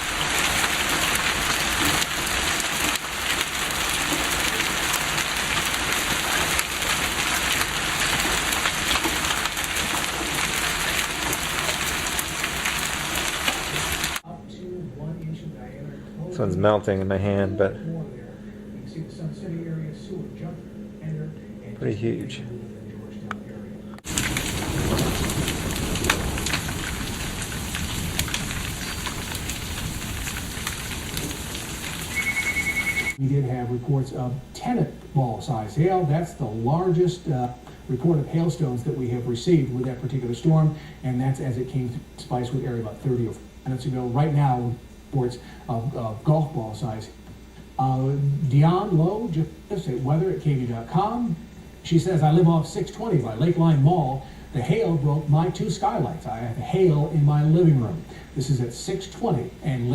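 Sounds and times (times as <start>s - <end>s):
hailstones striking: 0.0s - 14.2s, 24.0s - 33.2s
heavy rain hissing: 0.0s - 14.3s, 24.0s - 47.0s, 47.7s - 59.9s.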